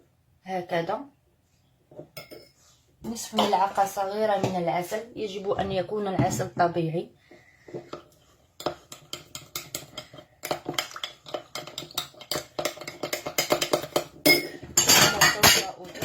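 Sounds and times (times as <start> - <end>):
metal spoon clinking against glass: 14.3 - 15.7.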